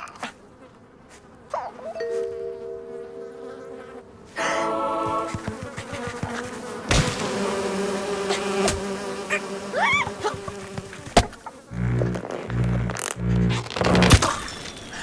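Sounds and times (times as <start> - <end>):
cartoon insect buzzing: 3.7 - 14.4
sharp knocks: 5.4 - 7.5
low pulsing tones: 11.7 - 14.2.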